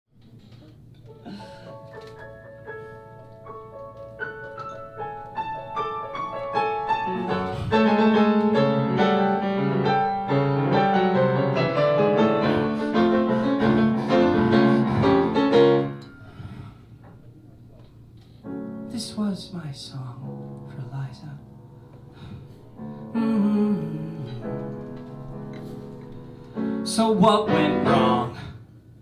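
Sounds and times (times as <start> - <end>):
solo piano: 0.6 - 16.3, 18.4 - 28.5.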